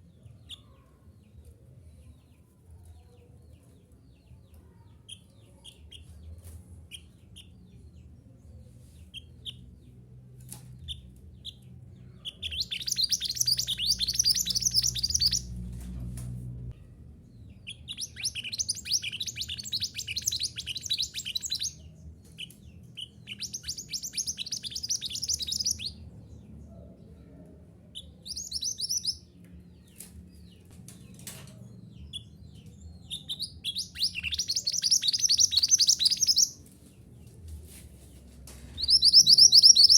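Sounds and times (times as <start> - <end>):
faint low hum: 0.0 - 39.9
songbird singing chattering notes: 10.8 - 15.6, 17.4 - 26.1, 27.9 - 30.3, 31.8 - 36.6, 38.8 - 39.9.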